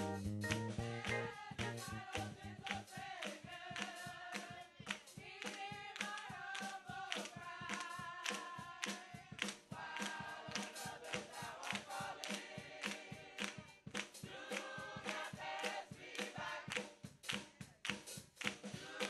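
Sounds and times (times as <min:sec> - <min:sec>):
voices singing: 0:00.0 - 0:13.6, 0:14.2 - 0:16.8, 0:18.7 - 0:19.0
congregation clapping: 0:00.0 - 0:19.0.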